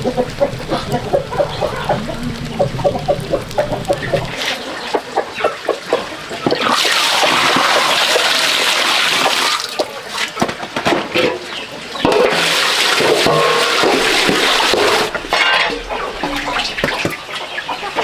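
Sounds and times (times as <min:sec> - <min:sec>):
knocks and clatter: 0:12.0 - 0:17.3
water running: 0:12.2 - 0:18.0.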